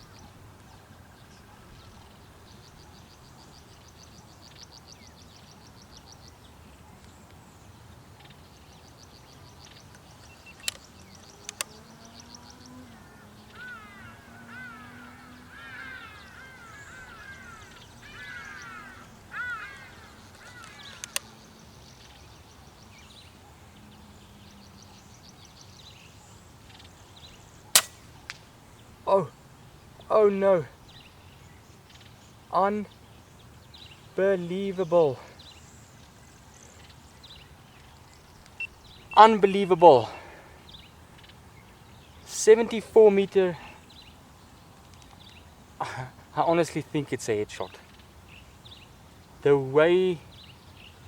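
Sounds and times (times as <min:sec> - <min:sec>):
birds calling: 0:00.0 - 0:51.0
chirpy repeated bird calls: 0:00.0 - 0:51.0
sharp clicks: 0:10.6 - 0:11.7, 0:20.6 - 0:21.3, 0:27.8 - 0:28.4.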